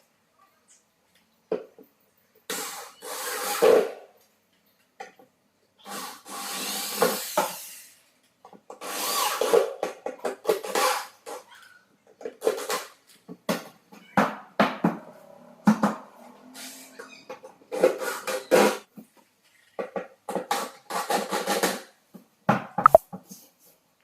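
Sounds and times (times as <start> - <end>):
power drill on wood: 5.8 - 8.0, 8.8 - 9.8.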